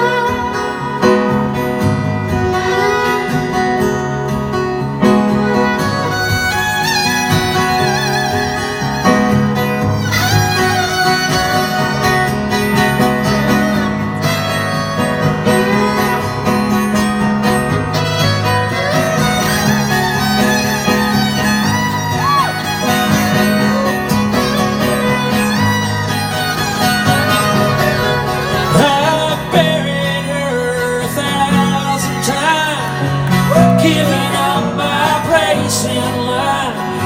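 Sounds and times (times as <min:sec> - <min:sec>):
bass: 0:00.0 - 0:37.0
fiddle lead with vibrato: 0:00.0 - 0:37.0
strummed acoustic guitar: 0:00.0 - 0:37.0.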